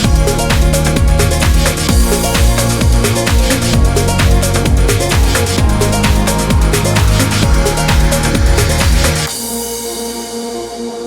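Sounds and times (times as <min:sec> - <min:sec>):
electronic driving beat: 0:00.0 - 0:10.1.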